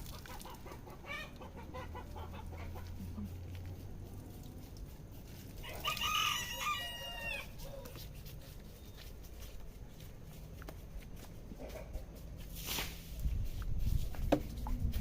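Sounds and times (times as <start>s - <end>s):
rooster crowing: 5.6s - 8.0s.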